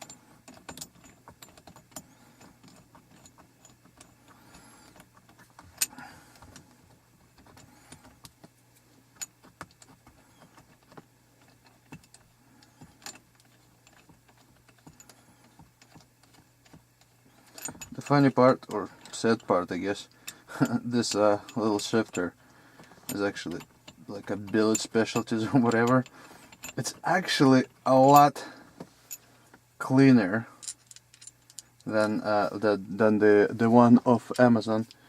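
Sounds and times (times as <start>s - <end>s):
metal tools clicking: 9.2s - 27.4s.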